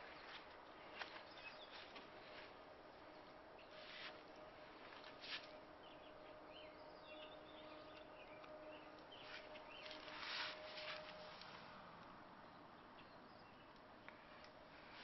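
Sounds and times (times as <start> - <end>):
birds chirping: 0.0 - 4.0, 5.5 - 11.2
faint steady hum: 0.0 - 15.0
rustling: 3.7 - 5.6, 9.2 - 11.7.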